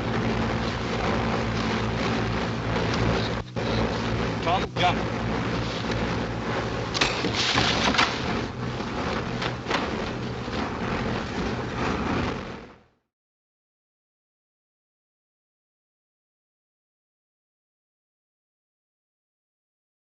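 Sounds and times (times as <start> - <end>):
aircraft engines droning: 0.0 - 12.9
knocks and clatters: 0.2 - 12.7.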